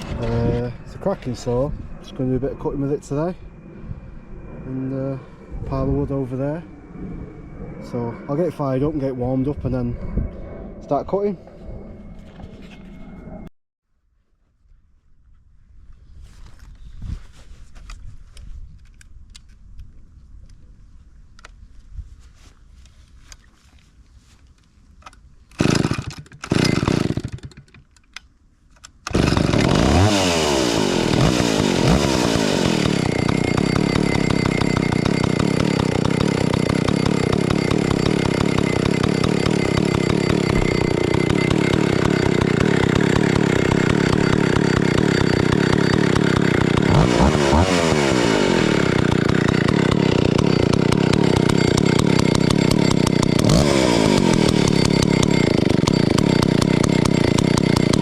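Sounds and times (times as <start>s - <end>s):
chainsaw revving: 25.6s - 27.7s, 29.1s - 58.0s
chainsaw starting and running: 25.6s - 27.9s, 29.1s - 58.0s.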